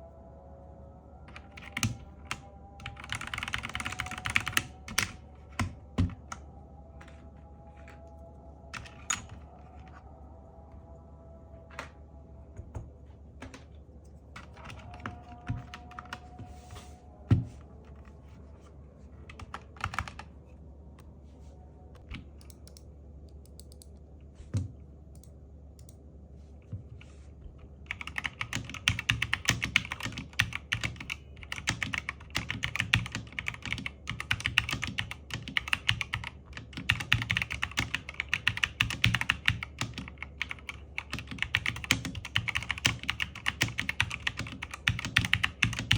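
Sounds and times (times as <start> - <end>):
fast typing on keyboard: 1.3 - 6.4, 8.7 - 10.0, 14.4 - 16.4, 19.3 - 20.3, 27.9 - 45.9.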